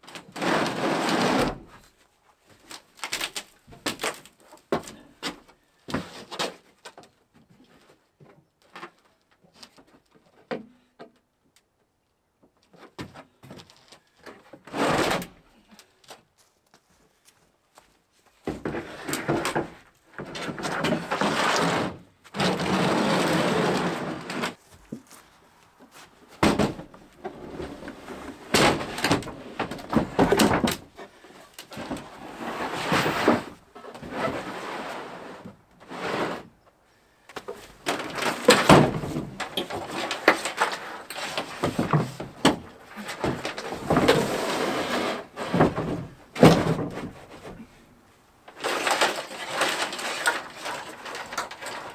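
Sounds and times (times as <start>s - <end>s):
scraping and rubbing: 18.7s - 36.6s, 37.4s - 47.8s, 48.5s - 51.9s.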